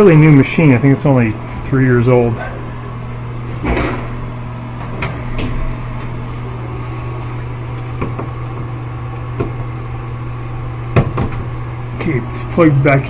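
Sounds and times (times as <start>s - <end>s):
low electrical hum: 0.0s - 13.0s.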